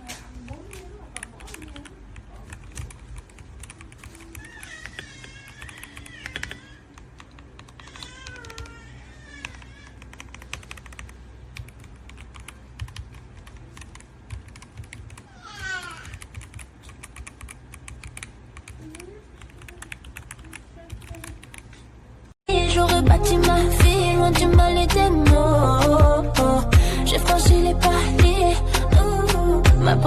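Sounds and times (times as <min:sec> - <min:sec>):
mechanical keyboard typing: 0:00.5 - 0:08.8, 0:09.4 - 0:15.2, 0:16.1 - 0:21.7.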